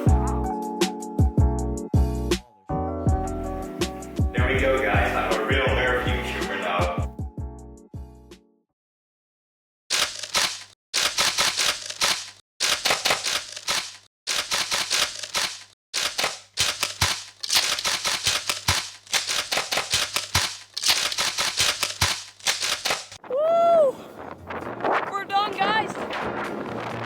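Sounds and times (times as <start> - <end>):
sharp mechanical clicking: 9.9 - 23.2.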